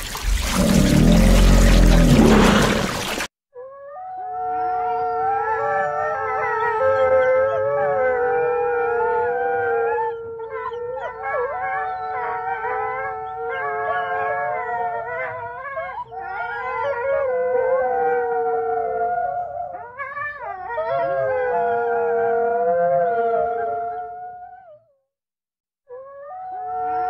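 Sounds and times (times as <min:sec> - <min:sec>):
wolves howling in chorus: 0:03.8 - 0:24.8.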